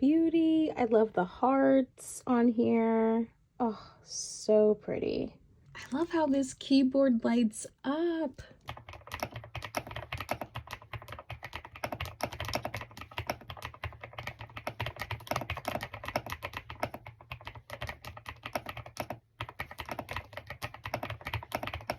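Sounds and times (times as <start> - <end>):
fast mechanical keyboard typing: 8.6 - 21.9.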